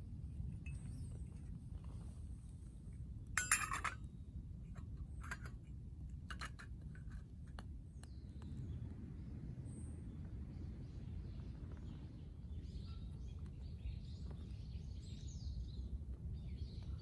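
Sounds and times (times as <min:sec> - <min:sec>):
low outdoor rumble: 0:00.0 - 0:17.0
camp cookware clinking: 0:03.4 - 0:04.1, 0:04.8 - 0:05.6, 0:06.2 - 0:07.2.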